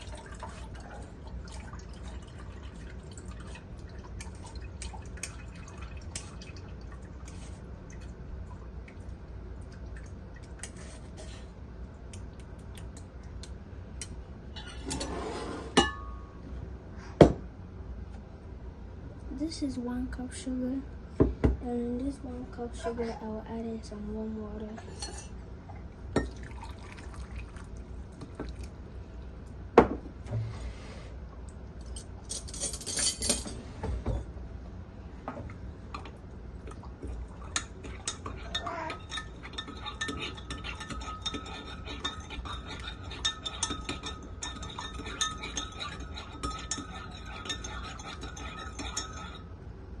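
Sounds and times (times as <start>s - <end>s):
water pouring: 0.0s - 8.1s, 26.2s - 27.7s
metal spoon clinking in container: 38.4s - 49.4s.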